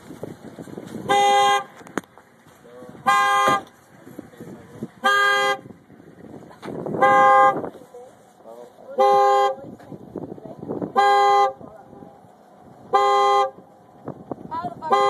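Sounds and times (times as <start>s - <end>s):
car horn blasts: 1.0s - 1.8s, 3.0s - 3.8s, 5.0s - 5.8s, 6.9s - 7.7s, 9.0s - 9.8s, 10.9s - 11.7s, 12.8s - 13.7s, 14.8s - 15.0s.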